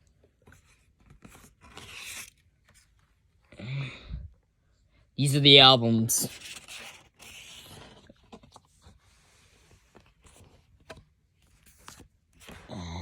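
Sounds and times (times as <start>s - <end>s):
paper and cardboard rustling: 0.1s - 3.2s, 6.2s - 12.7s
low voice: 12.7s - 13.0s.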